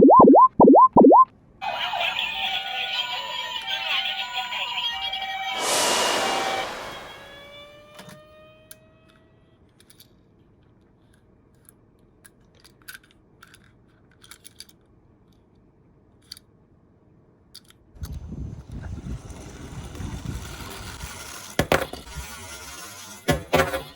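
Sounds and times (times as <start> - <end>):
low rolling rumble: 5.5 - 7.7
toy cars clicking and tapping: 11.0 - 14.8, 16.2 - 16.4, 17.6 - 17.8.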